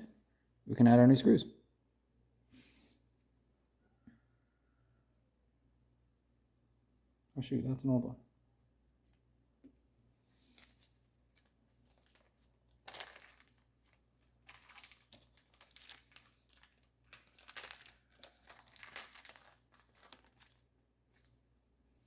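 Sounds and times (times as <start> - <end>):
packaging crinkling and rustling: 10.4 - 21.5.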